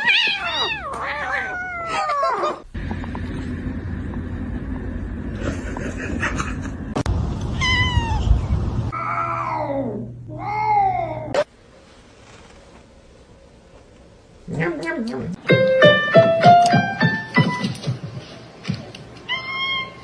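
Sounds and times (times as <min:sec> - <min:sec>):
cat meowing: 0:00.0 - 0:02.7, 0:07.6 - 0:08.3, 0:19.3 - 0:20.0
low rumble: 0:02.7 - 0:08.9.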